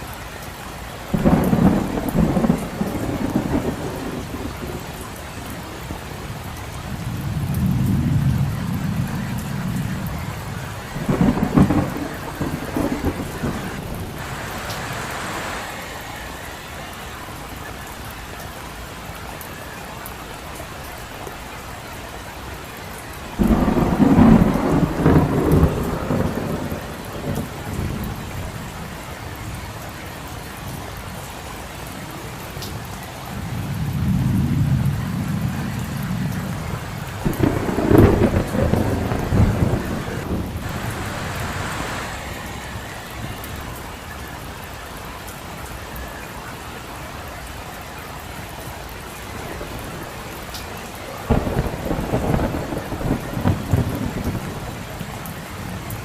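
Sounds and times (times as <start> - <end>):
rain falling on street: 0.0 - 56.0
thunder rumbling: 1.0 - 18.0, 23.3 - 29.7, 33.4 - 44.6, 48.8 - 56.0.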